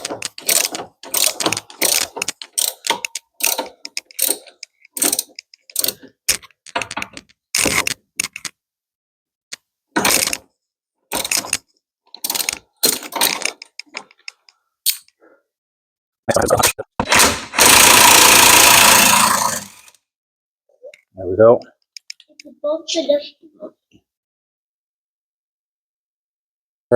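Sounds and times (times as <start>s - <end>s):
ratchet wrench clicking: 0.3s - 6.0s.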